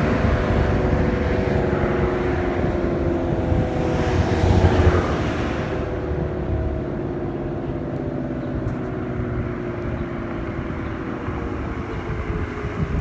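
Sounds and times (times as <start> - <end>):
tornado warning siren: 0.0 - 8.0.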